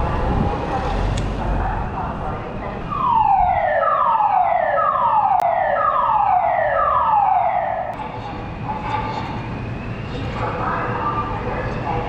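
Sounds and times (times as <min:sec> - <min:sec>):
fire alarm falling tone: 0:02.9 - 0:08.0.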